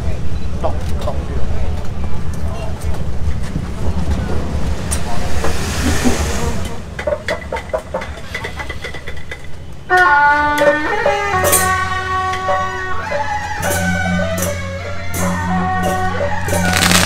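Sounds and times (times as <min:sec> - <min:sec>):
festival music melody: 0:16.0 - 0:17.0
cymbal crashes: 0:16.7 - 0:17.0.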